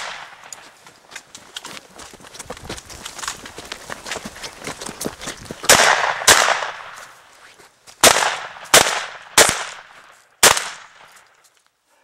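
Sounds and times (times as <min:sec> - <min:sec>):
shotgun shots with ringing tail: 0:05.7 - 0:07.0, 0:08.0 - 0:11.1.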